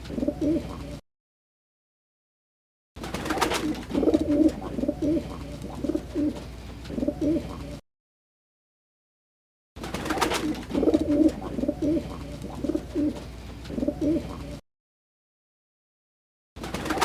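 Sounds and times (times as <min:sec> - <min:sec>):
pigeon cooing: 0:00.0 - 0:01.0, 0:03.3 - 0:07.8, 0:10.1 - 0:14.6.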